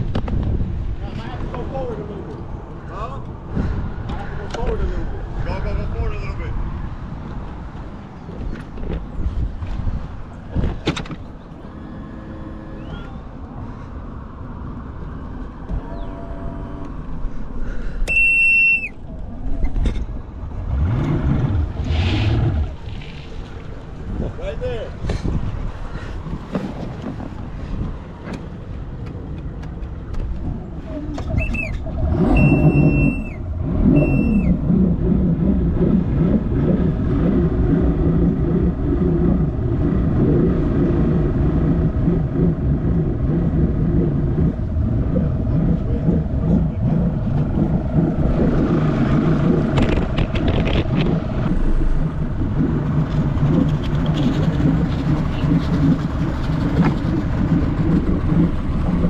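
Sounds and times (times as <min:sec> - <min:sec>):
outboard motor running: 0:11.2 - 0:13.9, 0:30.2 - 0:59.0
short high beeps: 0:18.1 - 0:19.0, 0:31.3 - 0:34.6.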